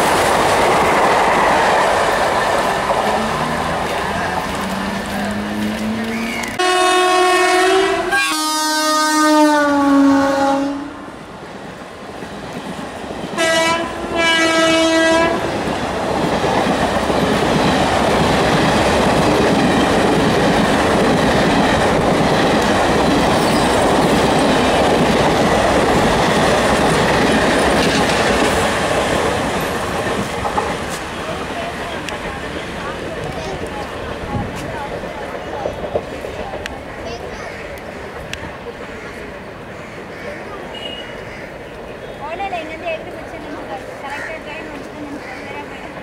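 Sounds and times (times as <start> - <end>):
train rumble and wheel clatter: 0.0 - 46.0
train horn blasts: 6.6 - 11.1, 13.4 - 15.5, 40.7 - 41.2.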